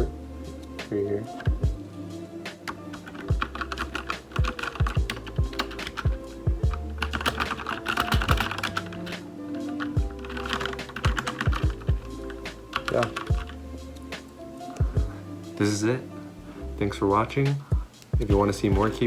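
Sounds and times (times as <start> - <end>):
music: 0.0 - 19.0
mechanical keyboard typing: 2.7 - 6.1, 6.7 - 12.0, 12.7 - 13.5.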